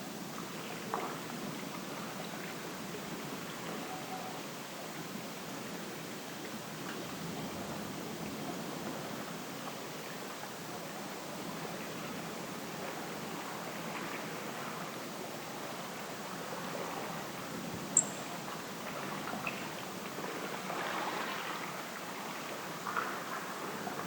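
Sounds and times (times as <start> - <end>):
watery ambience: 0.1 - 24.0
sharp high click: 18.0 - 18.3.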